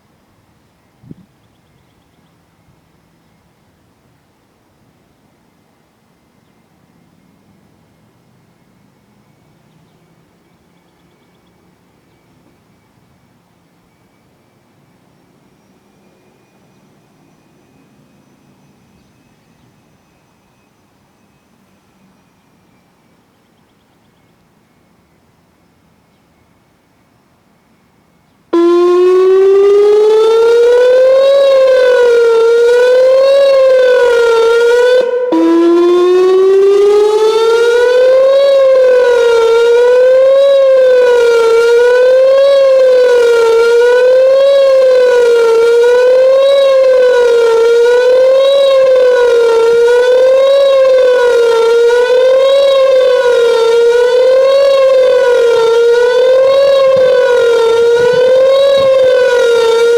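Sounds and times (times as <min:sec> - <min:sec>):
electronic warning siren wavering: 0:28.6 - 0:59.9.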